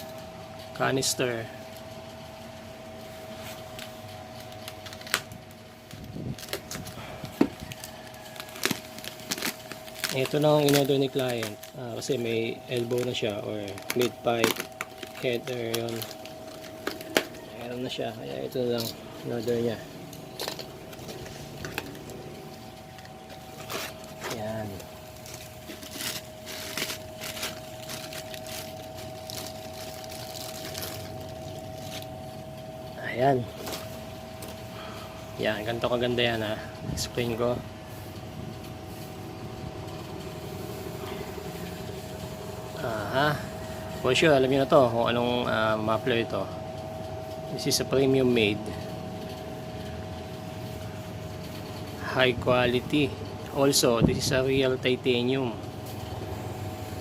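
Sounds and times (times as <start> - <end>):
steady faint hum: 0.0 - 57.0
packaging rustling: 3.2 - 32.7, 33.4 - 34.8.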